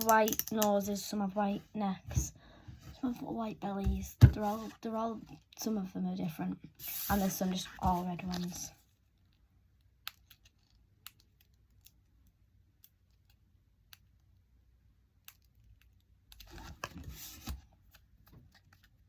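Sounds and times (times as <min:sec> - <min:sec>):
rustling and handling: 0:06.8 - 0:09.4.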